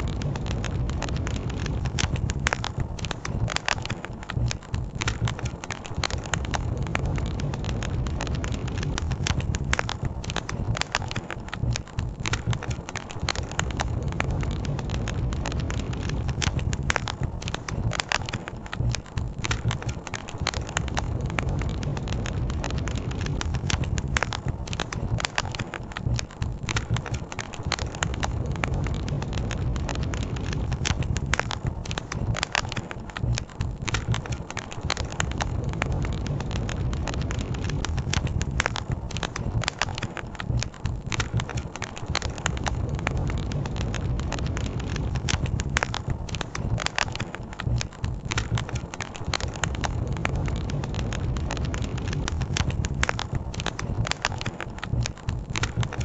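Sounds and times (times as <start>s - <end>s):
campfire crackling and popping: 0.0s - 56.0s.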